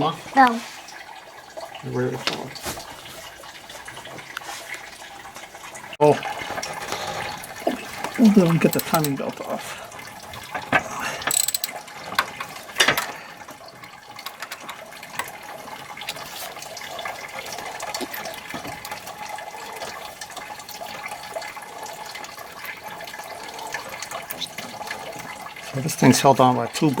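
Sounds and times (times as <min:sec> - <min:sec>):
socket ratchet clicking: 0:11.3 - 0:11.8.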